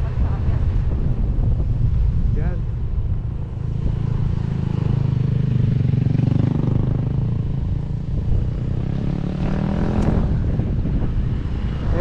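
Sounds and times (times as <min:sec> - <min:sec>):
motorcycle engine running: 0:03.0 - 0:12.0.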